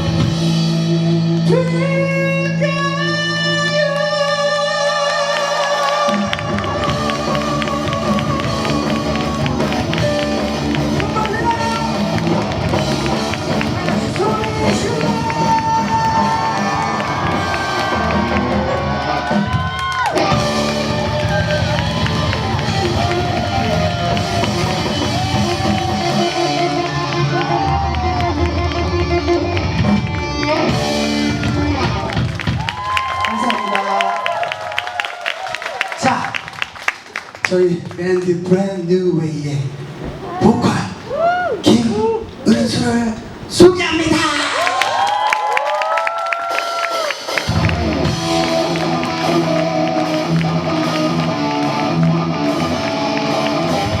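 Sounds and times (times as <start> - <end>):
live rock band playing: 0.0 - 1.9, 6.1 - 32.8, 46.5 - 54.0
electric guitar: 0.0 - 33.9, 46.5 - 54.0
crowd: 0.0 - 54.0.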